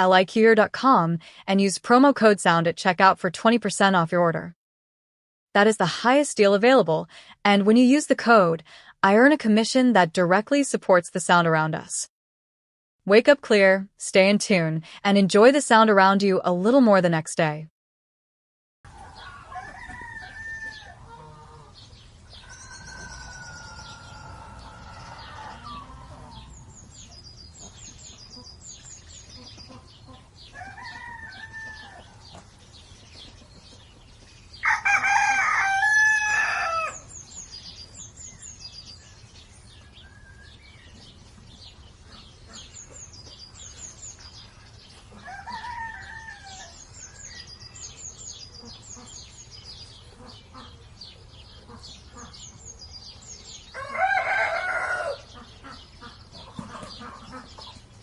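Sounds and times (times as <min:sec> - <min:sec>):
small birds chirping: 0:19.0 - 0:58.0
rooster crowing: 0:19.2 - 0:26.6, 0:30.5 - 0:32.3, 0:34.6 - 0:37.1, 0:45.2 - 0:46.8, 0:53.7 - 0:55.3.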